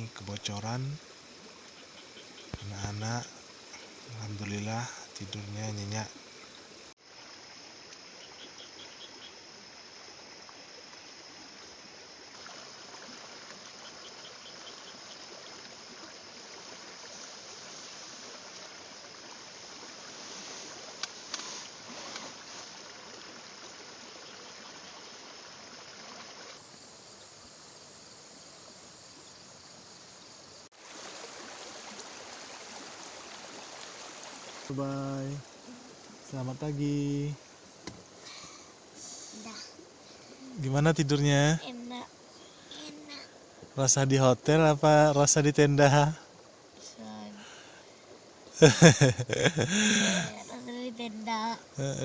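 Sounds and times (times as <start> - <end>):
insects trilling: 0.0 - 52.0
fast-flowing river: 30.8 - 36.4, 45.2 - 52.0
pulsed insect chirps: 48.6 - 52.0.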